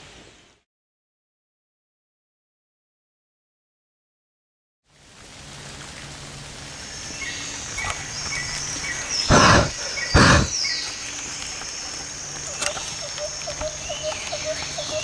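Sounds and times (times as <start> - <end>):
steady hiss: 4.9 - 15.0
high bird-like calls: 9.2 - 10.8.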